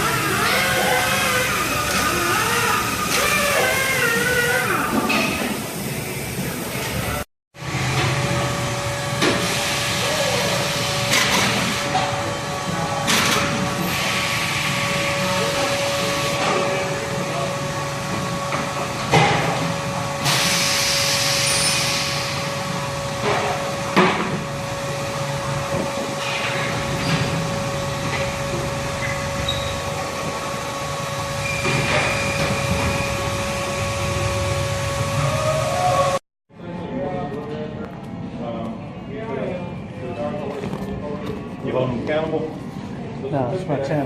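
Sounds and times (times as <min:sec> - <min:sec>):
steady machine hum: 0:05.5 - 0:36.2
air hissing: 0:20.2 - 0:22.6.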